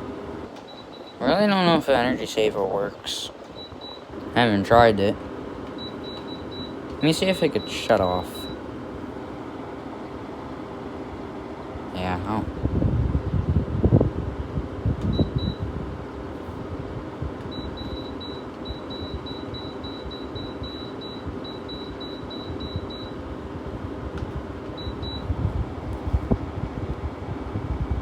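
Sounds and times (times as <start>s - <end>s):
air conditioner fan running: 0.0s - 28.0s
control panel beeps: 0.6s - 1.2s, 3.4s - 4.0s, 5.7s - 8.6s, 15.1s - 15.6s, 17.5s - 23.2s, 24.7s - 25.3s.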